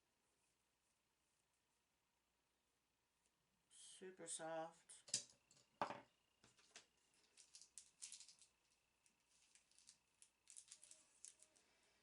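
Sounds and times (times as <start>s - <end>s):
brushes and packaging rustling: 6.5s - 12.0s.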